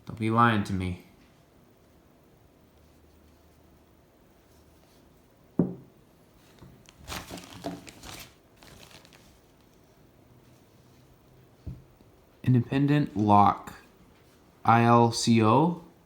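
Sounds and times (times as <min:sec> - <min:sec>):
bag crinkling: 0:06.8 - 0:09.8.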